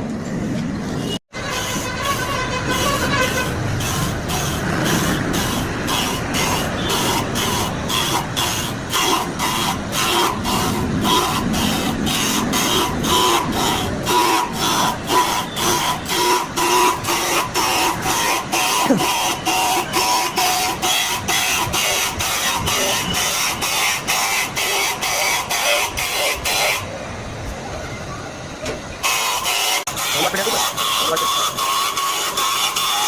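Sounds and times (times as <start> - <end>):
machine whine: 0.1 - 26.9
metalworking machine clatter: 28.6 - 33.0.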